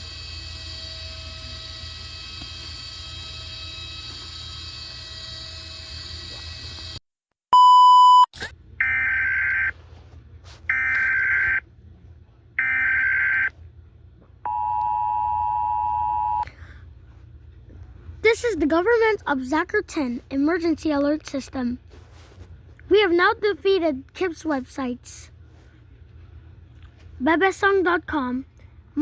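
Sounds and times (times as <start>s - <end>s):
loud single beep: 7.5s - 8.3s, 14.5s - 16.4s
two-tone attention signal: 14.5s - 16.4s.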